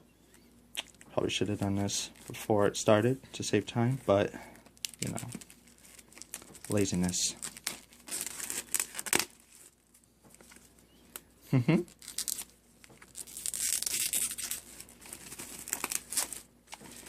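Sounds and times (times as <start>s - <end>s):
plastic shrink wrap tearing: 4.7s - 10.7s, 11.8s - 17.0s.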